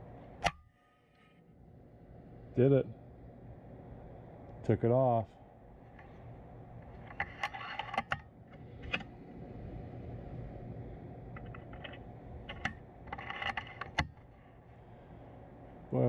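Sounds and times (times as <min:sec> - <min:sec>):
low steady hum: 0:00.0 - 0:16.0
mechanical clicks and rattles: 0:11.3 - 0:14.4.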